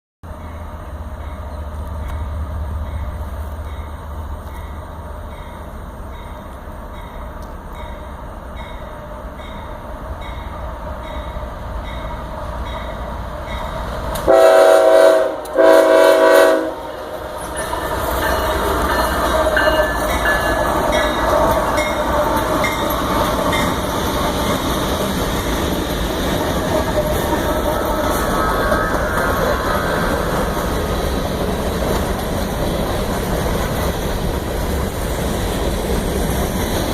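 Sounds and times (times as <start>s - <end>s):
train rumble: 0.2s - 36.9s
locomotive air horn blasts: 14.2s - 17.0s.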